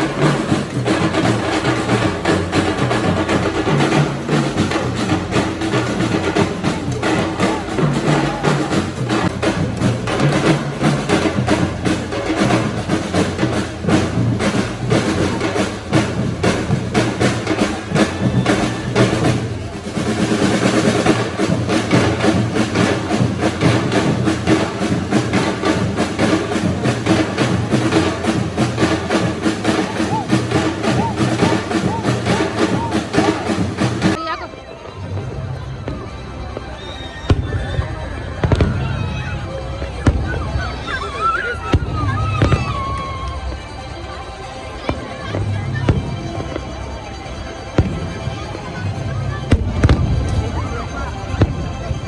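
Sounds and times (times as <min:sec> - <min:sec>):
music with fast percussion beat: 0:00.0 - 0:34.2, 0:41.2 - 0:43.4.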